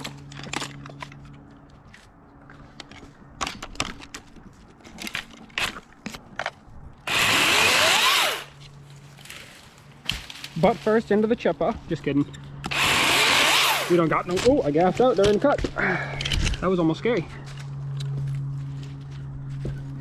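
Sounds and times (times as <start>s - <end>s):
chainsaw whine: 7.0s - 9.6s, 12.6s - 14.4s.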